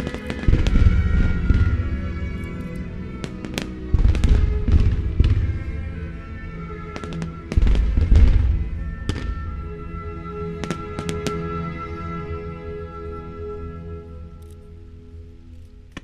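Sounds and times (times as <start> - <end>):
fireworks cracks and booms: 0.0 - 6.2, 6.8 - 9.7, 10.6 - 11.5
orchestral music: 0.0 - 16.0.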